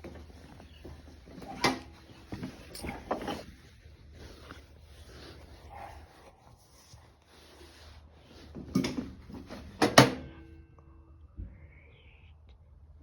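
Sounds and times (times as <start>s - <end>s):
faint rustling: 0.0s - 9.8s.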